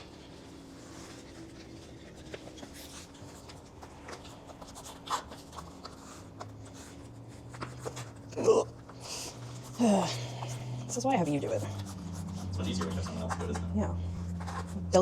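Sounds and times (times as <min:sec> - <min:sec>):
hands rubbing bicycle tire: 0:00.6 - 0:15.0
low hum: 0:05.4 - 0:15.0.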